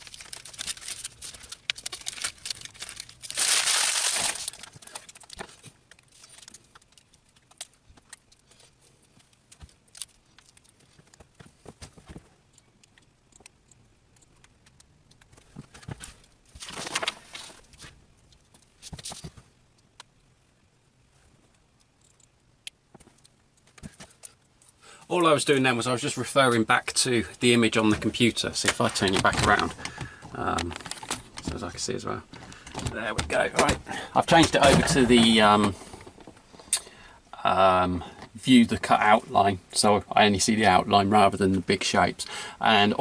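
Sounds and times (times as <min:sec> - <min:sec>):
crinkling rustle: 0:00.0 - 0:19.9, 0:22.9 - 0:36.8.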